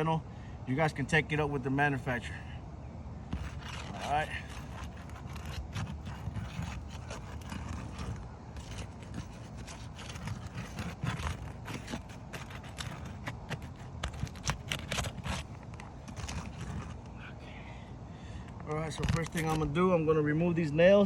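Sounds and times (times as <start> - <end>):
low steady rumble: 0.0 - 21.0
metal tool scraping shingles: 3.3 - 17.0, 18.9 - 19.7.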